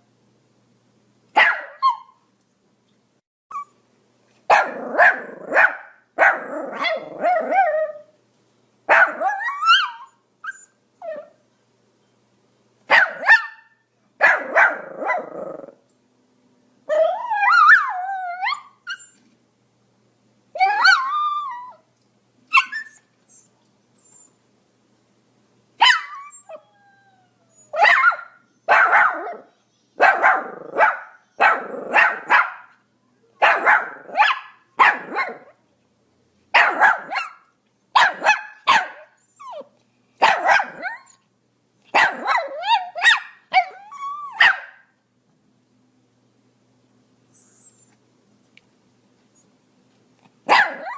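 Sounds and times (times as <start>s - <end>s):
small dog barking: 1.4s - 2.2s, 4.5s - 8.0s, 8.9s - 10.1s, 12.9s - 15.7s, 25.8s - 26.3s, 27.7s - 32.8s, 33.4s - 35.6s, 36.5s - 41.2s, 41.9s - 44.9s, 50.4s - 50.9s.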